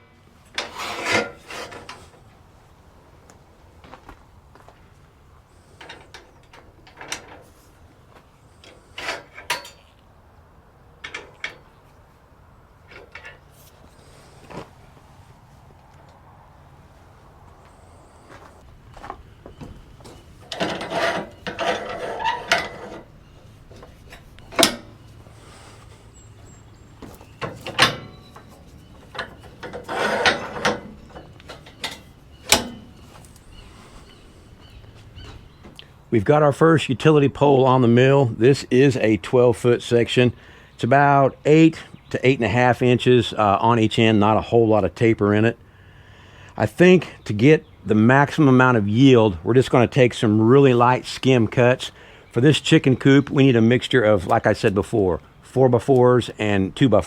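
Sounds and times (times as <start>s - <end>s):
wood and metal knocks and scrapes: 0.4s - 2.3s, 19.0s - 34.3s
wood clunking on metal: 0.4s - 2.4s, 5.5s - 10.0s, 18.3s - 35.9s.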